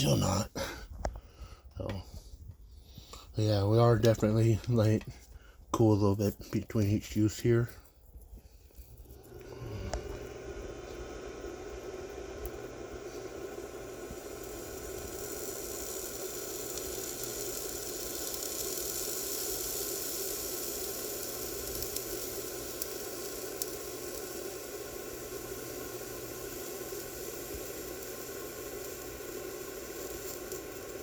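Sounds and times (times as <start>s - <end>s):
sharp crackles: 6.2s - 31.0s
dirt and paint sizzling: 12.4s - 31.0s.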